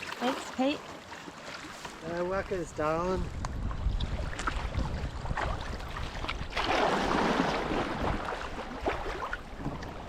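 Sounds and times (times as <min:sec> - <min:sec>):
water rushing and splashing: 0:00.0 - 0:10.0
wind rumble on microphone: 0:02.1 - 0:10.0.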